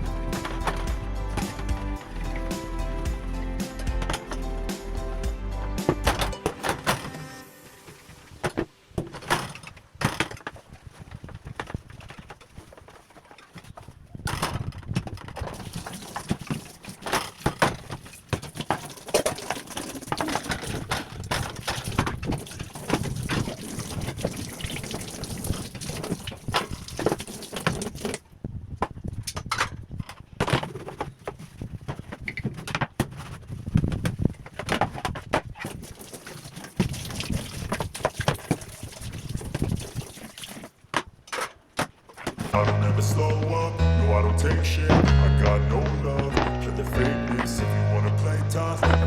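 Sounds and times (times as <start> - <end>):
knocks and clatter of handling: 8.4 - 42.6
water sounds: 15.5 - 20.9, 21.5 - 28.2, 35.8 - 40.8.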